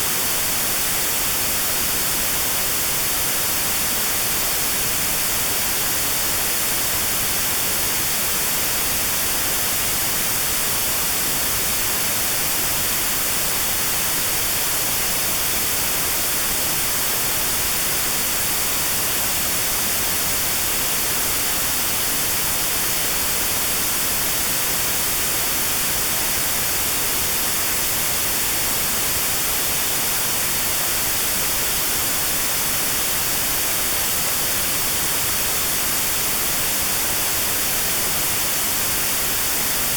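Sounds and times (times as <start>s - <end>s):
steady white noise hiss: 0.0s - 39.9s.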